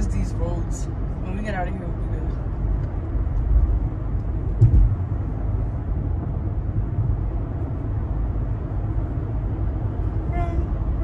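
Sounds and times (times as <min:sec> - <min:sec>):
car road and engine rumble: 0:00.0 - 0:11.0
brief knock: 0:04.6 - 0:05.0.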